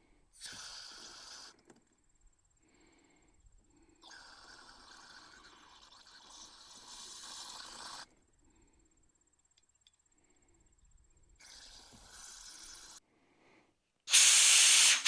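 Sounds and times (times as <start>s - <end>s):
faint hissing: 0.4s - 1.8s, 2.4s - 13.0s, 14.1s - 15.0s
compressed air blast: 14.1s - 15.0s.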